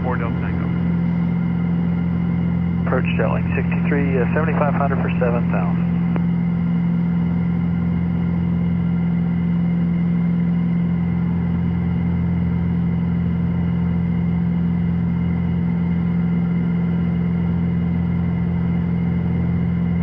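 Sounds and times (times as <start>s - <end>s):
propeller plane engine drone: 0.0s - 20.0s.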